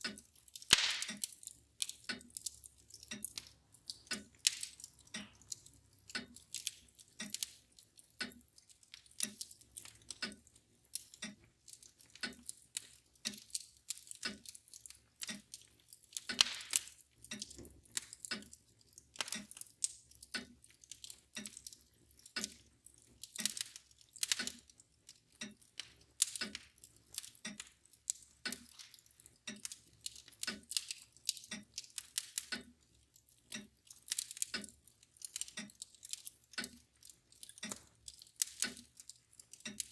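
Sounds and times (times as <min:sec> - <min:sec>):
clock ticking: 0:00.0 - 0:39.9
wood fire crackling and popping: 0:00.0 - 0:39.9.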